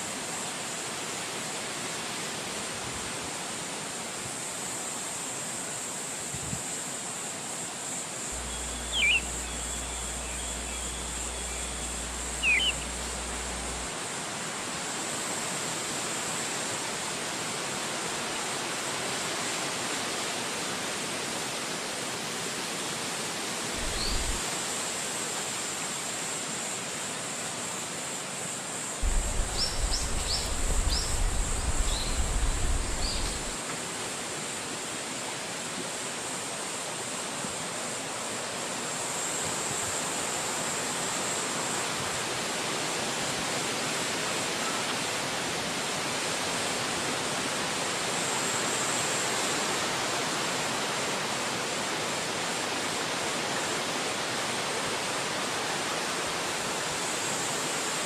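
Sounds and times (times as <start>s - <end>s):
wind rushing through trees: 0.0s - 25.0s, 28.8s - 36.0s
bird chirps: 8.4s - 13.9s, 23.8s - 24.4s, 29.0s - 33.6s
brief low rumbles: 8.4s - 13.9s, 29.0s - 33.6s.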